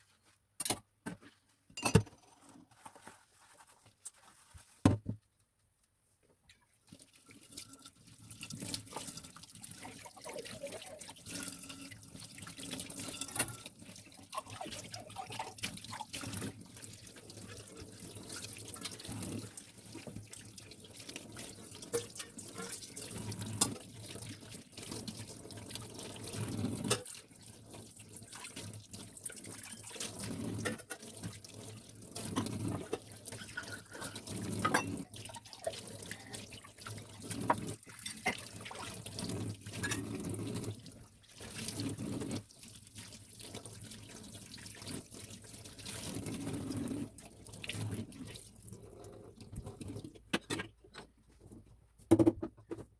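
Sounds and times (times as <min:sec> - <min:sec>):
knocks and clinks: 0:01.8 - 0:02.2.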